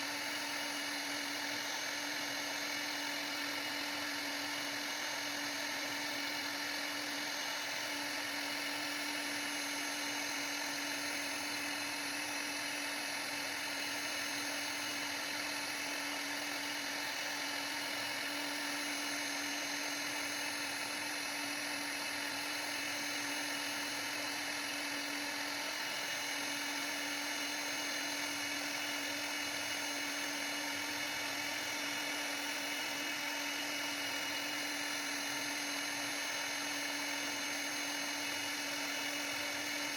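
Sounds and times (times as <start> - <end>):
router spindle whining: 0.0 - 39.9.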